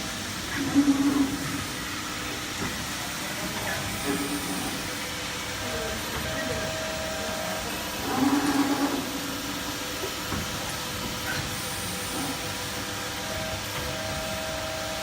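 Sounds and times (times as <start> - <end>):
hydraulic press hum and hiss: 0.0 - 15.0.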